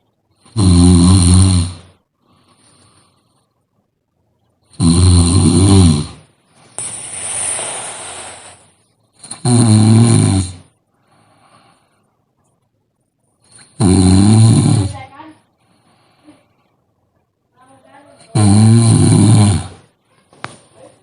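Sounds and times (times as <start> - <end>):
person snoring loudly: 0.4 - 1.9, 4.7 - 8.6, 9.3 - 10.7, 13.6 - 15.0, 18.3 - 19.9
soft airy breath: 2.2 - 3.9, 6.4 - 8.9, 10.9 - 12.4, 15.5 - 16.8.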